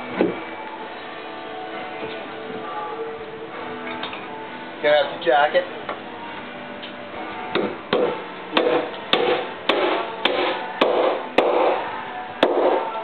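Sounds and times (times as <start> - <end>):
hammer knocks on wooden beam: 7.5 - 11.7.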